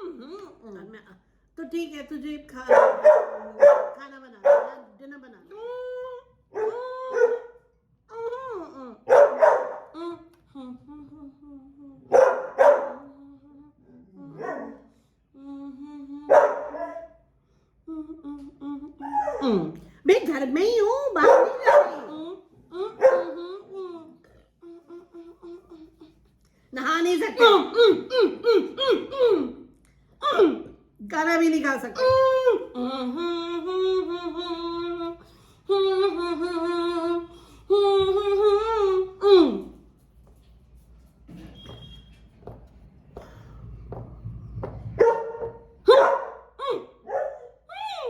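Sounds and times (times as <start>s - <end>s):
dog barking: 2.7s - 4.9s, 6.5s - 7.6s, 9.1s - 10.0s, 12.1s - 13.1s, 14.4s - 14.9s, 16.3s - 17.2s, 21.2s - 22.1s, 23.0s - 23.4s, 45.0s - 47.6s
woman singing wordless tune: 9.9s - 12.1s, 15.4s - 16.4s, 17.9s - 25.8s, 30.2s - 39.8s.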